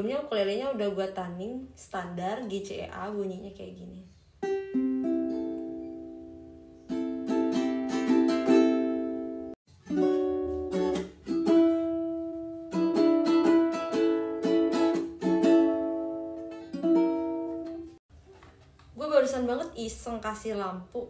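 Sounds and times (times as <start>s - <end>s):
ukulele strumming chords: 4.4s - 18.0s.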